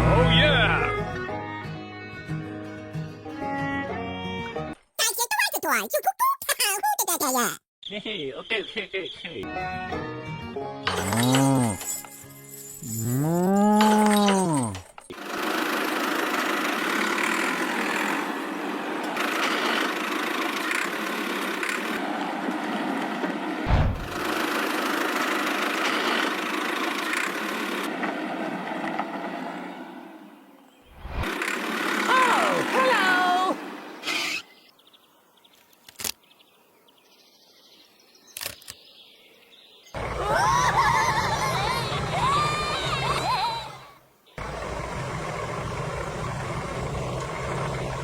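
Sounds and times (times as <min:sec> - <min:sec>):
small engine idling: 0:15.1 - 0:30.3, 0:31.1 - 0:33.0, 0:40.0 - 0:48.0
sharp clicks: 0:38.3 - 0:38.8.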